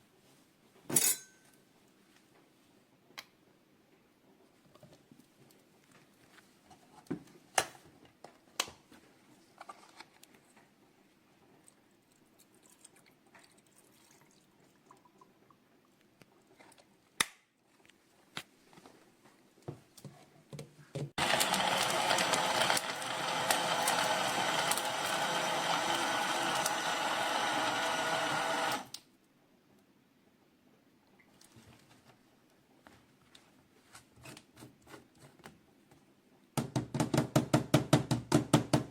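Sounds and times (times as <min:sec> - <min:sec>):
blender motor whirring: 0:21.2 - 0:29.0.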